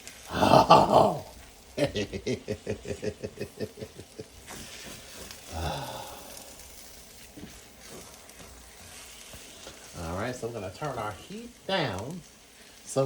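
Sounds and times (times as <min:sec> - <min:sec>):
eggs sizzling in a skillet: 0:00.0 - 0:13.0
person laughing: 0:00.3 - 0:04.7.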